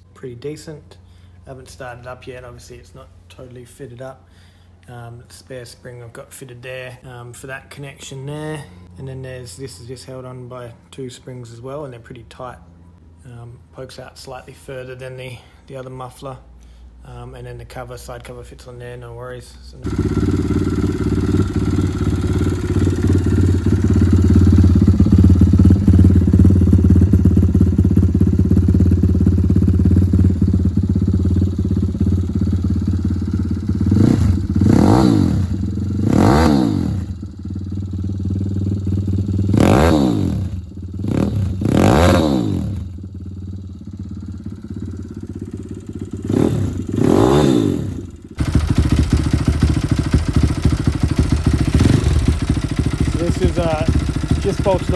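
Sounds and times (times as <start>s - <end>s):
engine throttle blips: 19.8s - 54.9s
motorcycle engine idling: 19.8s - 54.9s.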